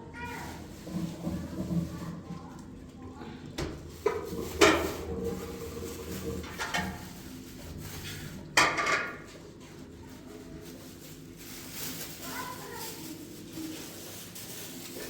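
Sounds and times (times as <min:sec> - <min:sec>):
household objects clattering: 0:03.6 - 0:09.4.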